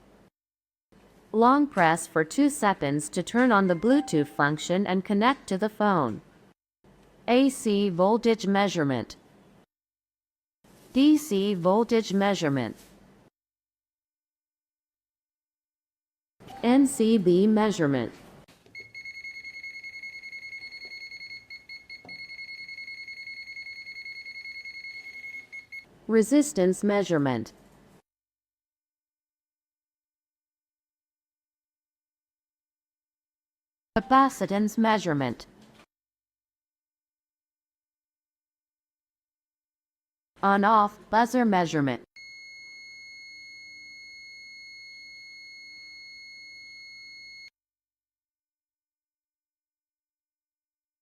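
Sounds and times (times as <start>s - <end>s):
multimeter continuity beep: 18.8s - 25.8s, 42.2s - 47.5s.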